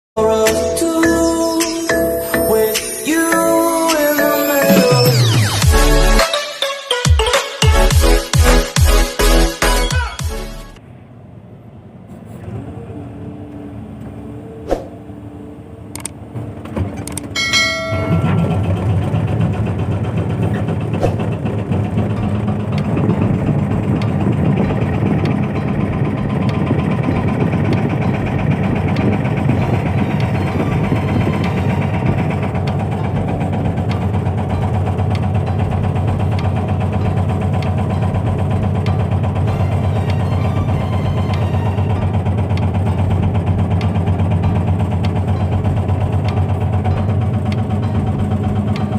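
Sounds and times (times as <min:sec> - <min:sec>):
diesel engine running: 0:00.2 - 0:06.2, 0:07.7 - 0:48.9
sharp clicks: 0:16.0 - 0:16.2
ringing metallic clank: 0:17.4 - 0:19.0.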